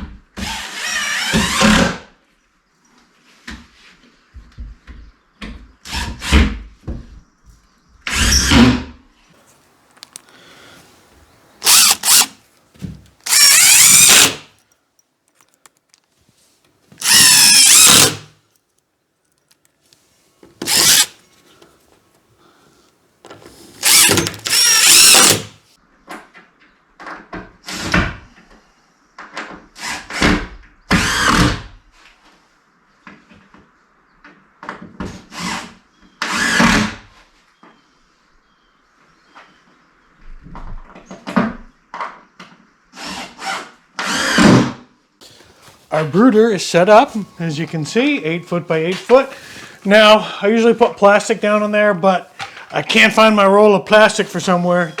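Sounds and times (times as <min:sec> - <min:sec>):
power drill driving screws: 0:00.4 - 0:02.0, 0:08.1 - 0:08.7, 0:11.6 - 0:12.4, 0:13.2 - 0:14.5, 0:17.0 - 0:18.3, 0:20.6 - 0:21.2, 0:23.6 - 0:25.6, 0:30.9 - 0:31.6, 0:35.3 - 0:37.0, 0:43.0 - 0:44.6.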